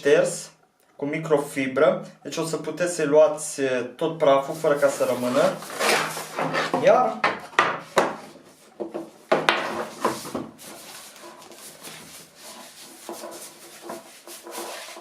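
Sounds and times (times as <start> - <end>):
cardboard rubbing and sliding: 4.5 - 6.8, 9.5 - 15.0.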